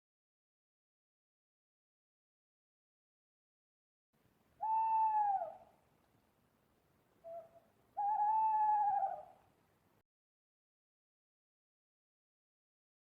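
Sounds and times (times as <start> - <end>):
owl calling: 4.6 - 5.8, 7.2 - 9.4.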